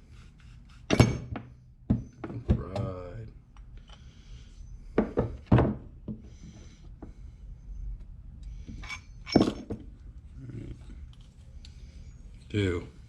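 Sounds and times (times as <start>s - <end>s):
metal parts and tools clinking: 8.7s - 9.8s.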